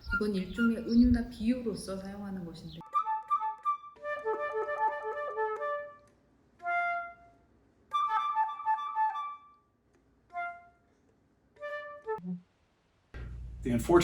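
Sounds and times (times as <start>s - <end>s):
flute playing quick notes: 2.8s - 9.6s.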